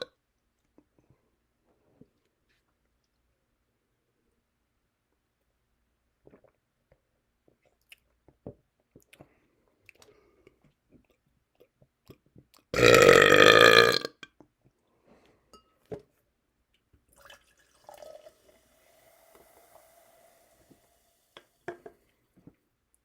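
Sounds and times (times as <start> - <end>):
faint clicks and mouth noises: 6.2 - 12.7
man belching: 12.8 - 14.2.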